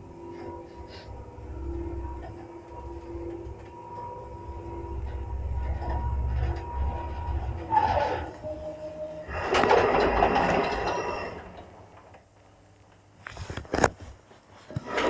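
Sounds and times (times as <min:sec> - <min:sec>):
lift motor rumble: 0:00.0 - 0:12.8
loud mechanical clatter: 0:09.2 - 0:12.1.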